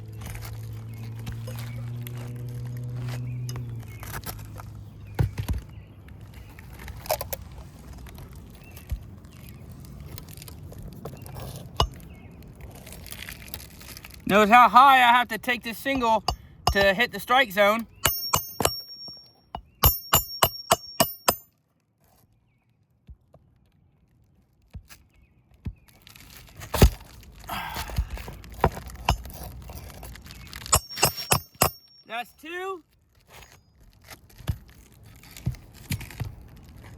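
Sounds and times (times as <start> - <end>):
shingles rustling and scraping: 0.0 - 18.0, 23.4 - 32.2, 33.0 - 36.9
hammer tapping nails on shingles: 15.9 - 21.5, 30.6 - 32.0.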